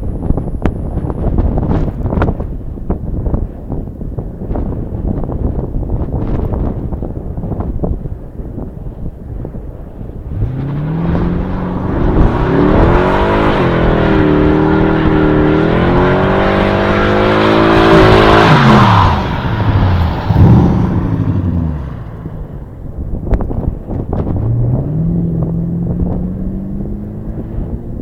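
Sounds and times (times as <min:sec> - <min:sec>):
car engine revving: 0:10.2 - 0:22.9, 0:23.5 - 0:28.0
car engine at full throttle passing: 0:10.2 - 0:23.0, 0:23.8 - 0:28.0.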